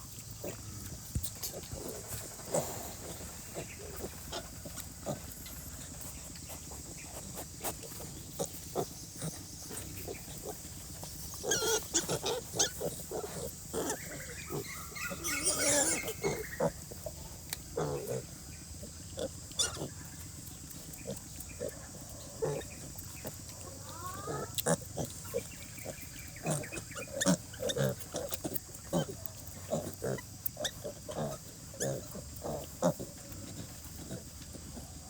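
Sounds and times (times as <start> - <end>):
pigs grunting: 0.2 - 35.0
piglets squealing: 11.4 - 16.8.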